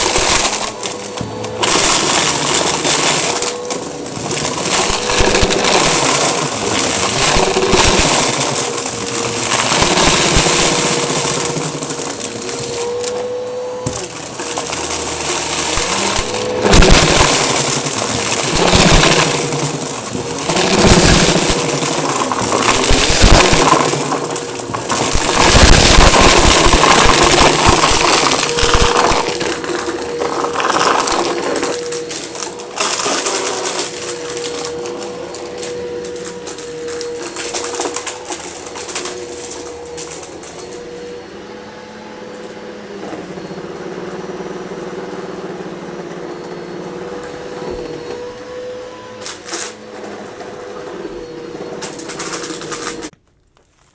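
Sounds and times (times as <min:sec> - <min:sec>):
grit crackling through nozzle: 0:00.0 - 0:40.9
vacuum cleaner motor whine: 0:00.0 - 0:53.2.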